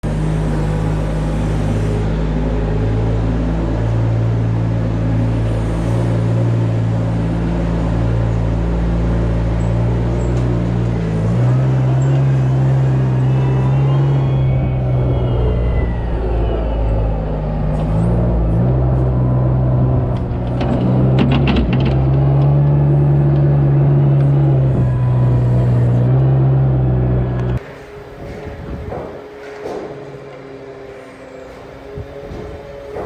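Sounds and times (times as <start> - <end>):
tractor engine running: 15.0 - 30.5.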